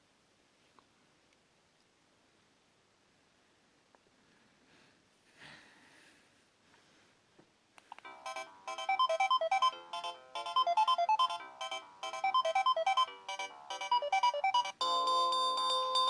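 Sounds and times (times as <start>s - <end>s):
electronic ringtone melody: 8.1s - 16.0s.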